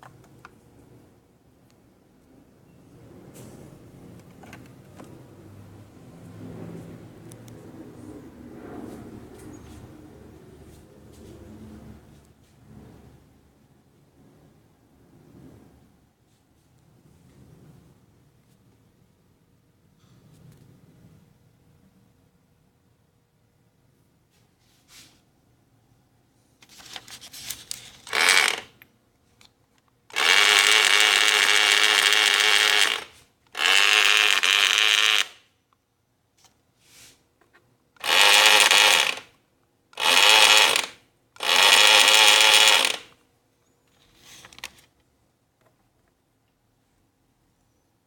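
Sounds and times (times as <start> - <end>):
small handling noises: 26.4 - 31.4, 43.2 - 46.7
sewing machine running: 28.0 - 28.7, 30.1 - 35.4, 38.0 - 39.3, 40.0 - 43.1.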